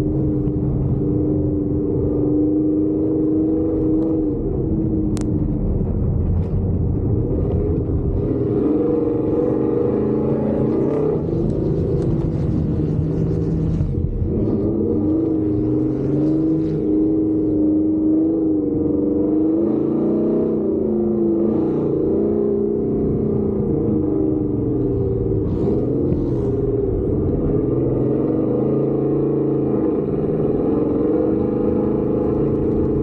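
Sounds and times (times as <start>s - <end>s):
gear shifts: 0.0s - 18.1s, 22.8s - 28.6s, 29.7s - 33.0s
truck engine revving under load: 7.3s - 33.0s.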